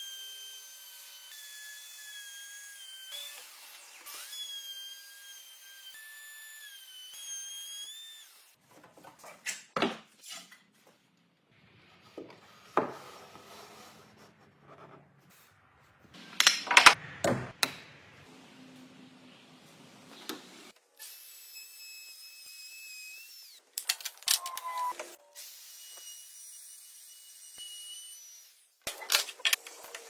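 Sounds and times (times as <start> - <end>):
wood knocking and rubbing: 12.0 - 15.1.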